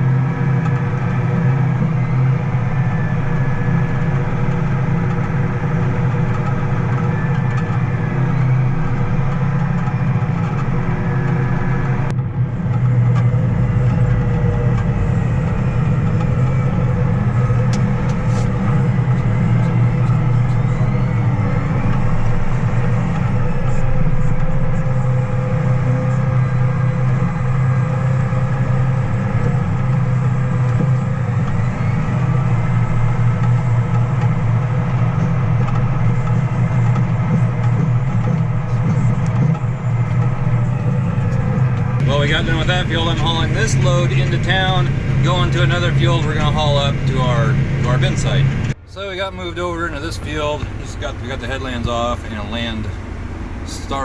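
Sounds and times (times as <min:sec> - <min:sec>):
diesel machinery engine running: 0:00.0 - 0:54.0.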